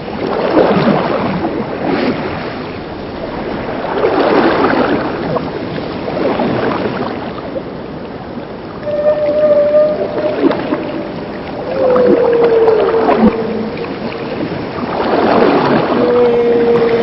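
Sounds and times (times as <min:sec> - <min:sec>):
underwater water noise: 0:00.0 - 0:17.0
whale calls: 0:08.8 - 0:17.0.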